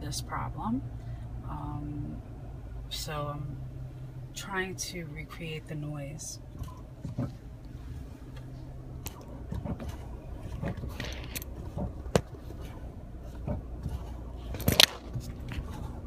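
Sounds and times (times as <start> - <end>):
low steady hum: 0.0 - 16.0
brake pedal clicks and creaks: 6.5 - 16.0.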